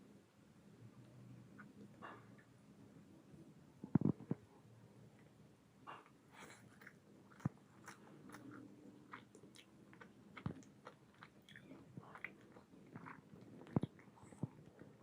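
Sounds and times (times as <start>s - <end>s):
chewing with mouth smacks: 6.4s - 15.0s.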